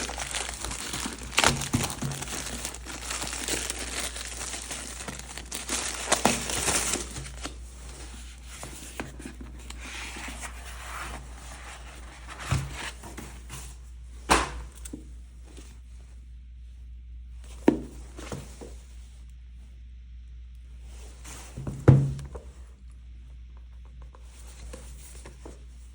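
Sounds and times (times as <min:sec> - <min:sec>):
packaging tearing and crinkling: 0:00.0 - 0:07.6.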